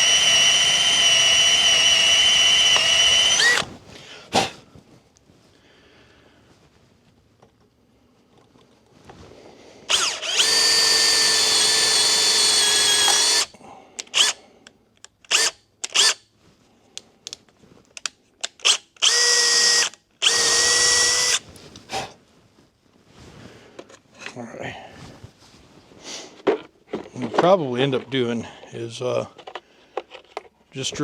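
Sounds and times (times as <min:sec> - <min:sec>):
electric drill running: 0:00.0 - 0:03.7, 0:09.9 - 0:13.5, 0:14.2 - 0:14.4, 0:15.3 - 0:16.2, 0:18.6 - 0:21.4.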